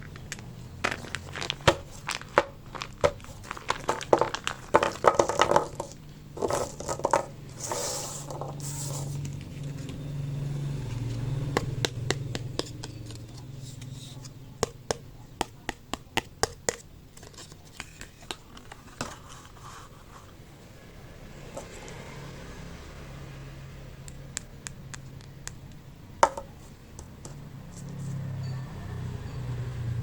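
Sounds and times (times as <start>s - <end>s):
plastic packaging crinkling: 0.0s - 9.9s.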